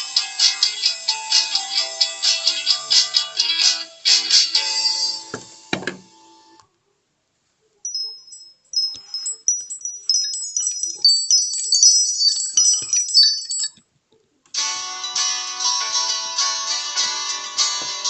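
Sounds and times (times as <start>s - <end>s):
tinkling ringtone chimes: 7.8s - 13.8s.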